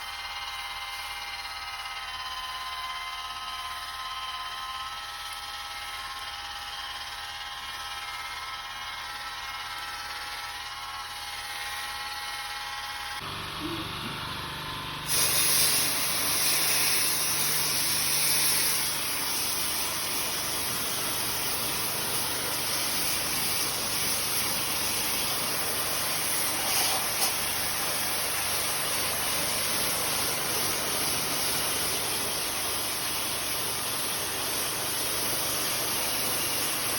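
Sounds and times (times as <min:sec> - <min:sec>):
pressure washer spray hiss: 0:15.1 - 0:36.9.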